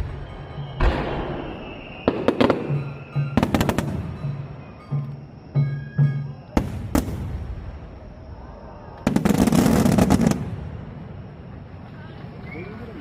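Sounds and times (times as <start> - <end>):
firework shells booming: 0.0 - 4.5, 6.4 - 8.4.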